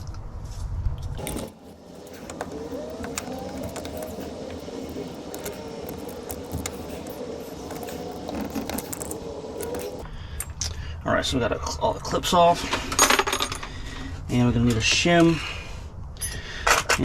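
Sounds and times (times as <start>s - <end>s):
steady drone: 1.2s - 10.1s.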